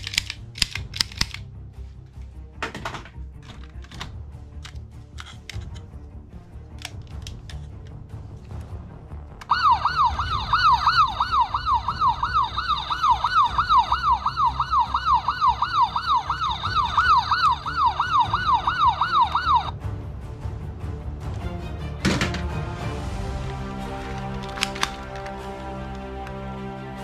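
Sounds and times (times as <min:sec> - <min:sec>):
toy police siren wailing: 0:09.5 - 0:19.7.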